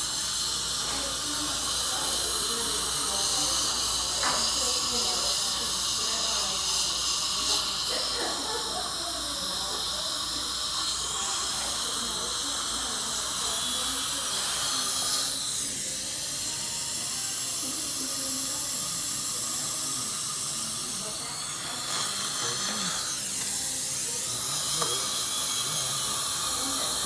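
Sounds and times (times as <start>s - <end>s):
dental equipment hissing: 0.0s - 27.0s.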